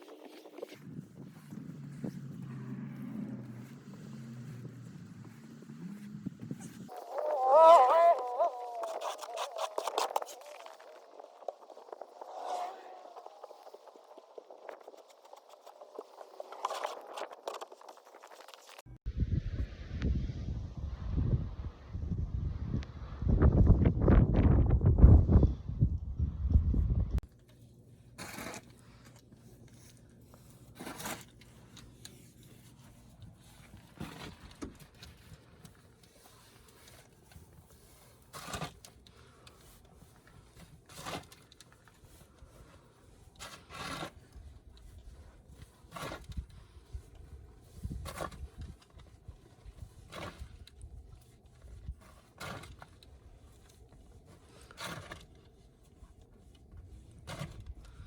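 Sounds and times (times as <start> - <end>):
crunching in snow: 0.0 - 18.9.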